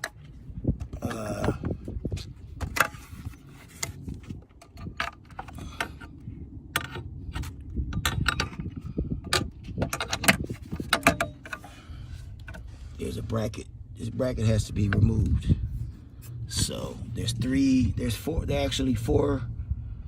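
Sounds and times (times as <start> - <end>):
clicks and taps of hard parts: 6.8 - 11.7
low rumble: 11.7 - 20.0.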